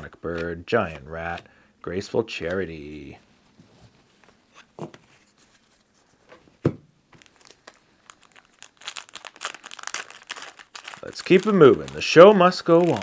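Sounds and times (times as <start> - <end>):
foil wrapper crinkling: 7.2 - 13.0.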